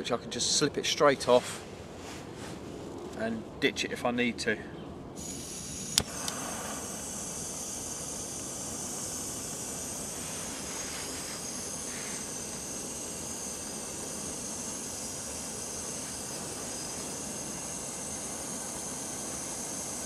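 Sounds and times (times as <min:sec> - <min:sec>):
gas stove burner hissing: 0:05.2 - 0:20.0.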